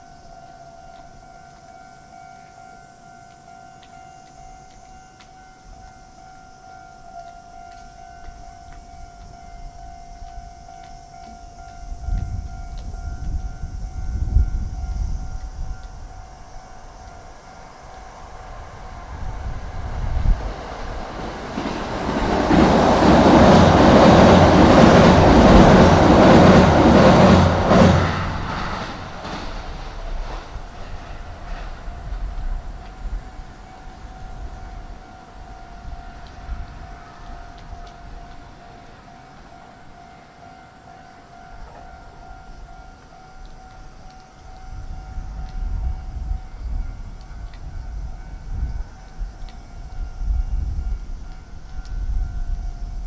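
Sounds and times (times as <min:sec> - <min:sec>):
faint level-crossing bell: 0:00.0 - 0:22.3, 0:23.4 - 0:53.0
train wheels rumbling on rails: 0:00.0 - 0:53.0
low rumble: 0:18.2 - 0:35.0.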